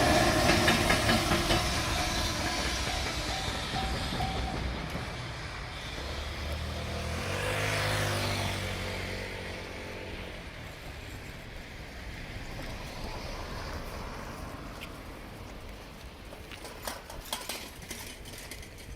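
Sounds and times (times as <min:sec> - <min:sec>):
vehicle driving past: 0:05.0 - 0:10.2.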